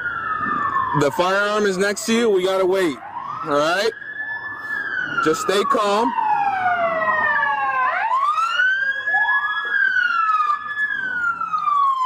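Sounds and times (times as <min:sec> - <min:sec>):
emergency vehicle sirens wailing: 0:00.0 - 0:12.0.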